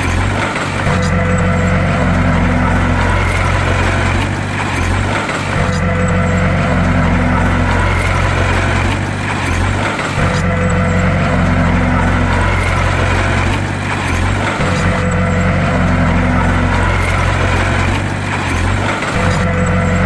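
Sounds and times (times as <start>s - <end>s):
bulldozer diesel engine droning: 0.0s - 20.0s.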